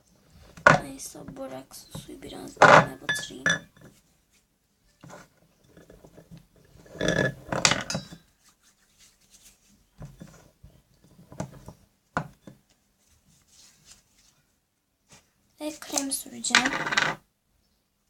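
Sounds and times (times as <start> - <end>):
dishes clinking on a table: 7.0 - 8.2.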